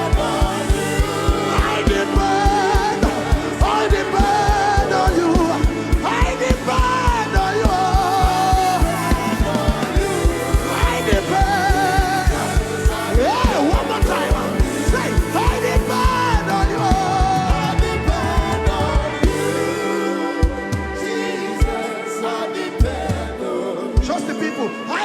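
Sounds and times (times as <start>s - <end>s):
driving drum beat: 0.0s - 21.9s
gospel singing: 0.0s - 25.0s.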